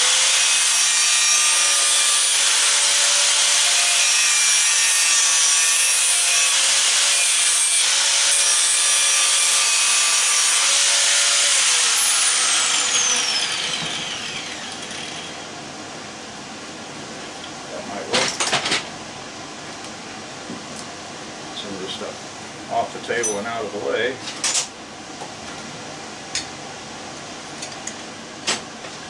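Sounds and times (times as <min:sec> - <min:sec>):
power tool grinding metal: 0:00.0 - 0:15.5
motor winding down whine: 0:12.0 - 0:15.4.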